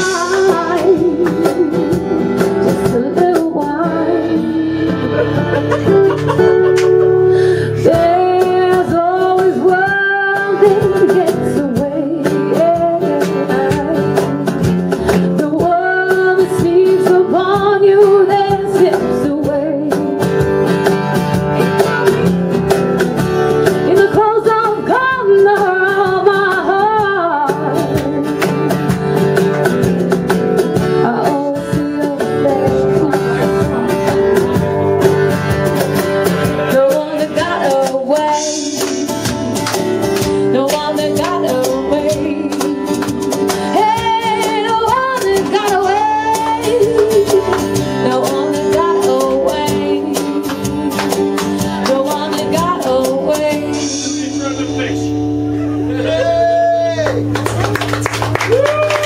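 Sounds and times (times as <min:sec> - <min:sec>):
person singing: 0:00.0 - 0:14.6, 0:31.0 - 0:34.6
strummed acoustic guitar: 0:00.0 - 0:58.4
cajon beating: 0:00.0 - 0:59.0.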